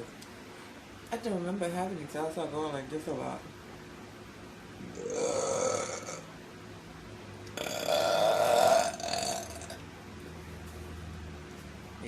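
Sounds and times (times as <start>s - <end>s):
woman belching: 4.9s - 6.3s, 7.6s - 9.8s.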